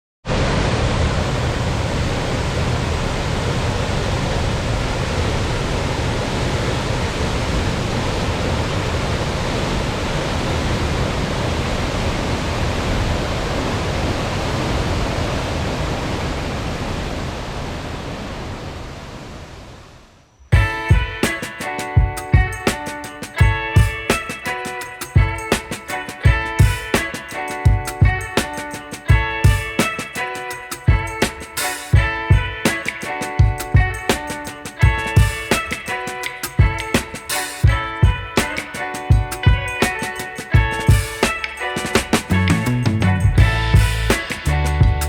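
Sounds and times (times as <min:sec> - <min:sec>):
waterfall roar: 0:00.3 - 0:18.6.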